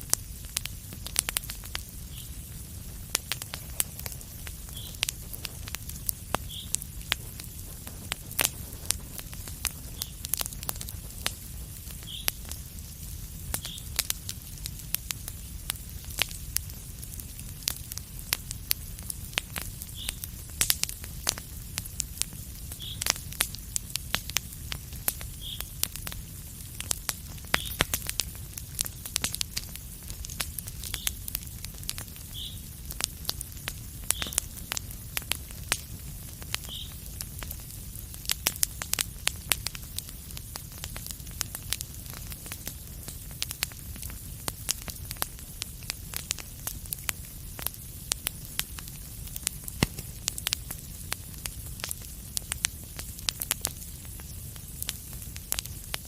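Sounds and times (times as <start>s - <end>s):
wood fire crackling: 0.0s - 56.0s.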